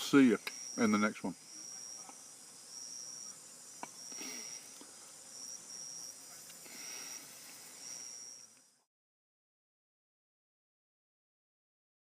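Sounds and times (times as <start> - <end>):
faint background hiss: 0.0 - 8.9
insects trilling: 0.0 - 8.9.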